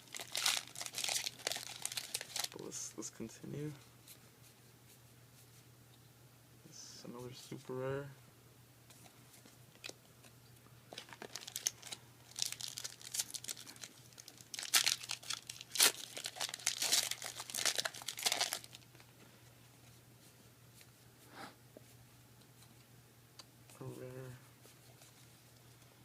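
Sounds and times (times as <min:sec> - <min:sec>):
foil wrapper tearing and crinkling: 0:00.0 - 0:02.6, 0:10.9 - 0:18.8.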